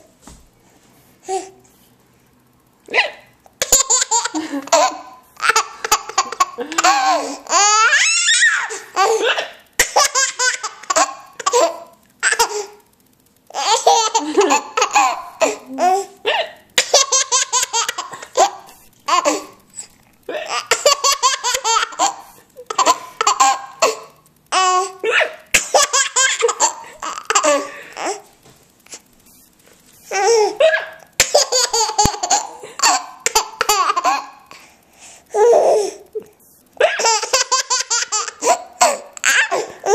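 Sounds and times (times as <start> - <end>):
woman hiccuping: 2.9 - 3.3, 16.2 - 16.6, 30.6 - 31.0
baby laughing: 3.0 - 12.8, 13.5 - 16.1, 16.8 - 19.6, 20.4 - 28.2, 30.1 - 34.6, 36.8 - 39.9.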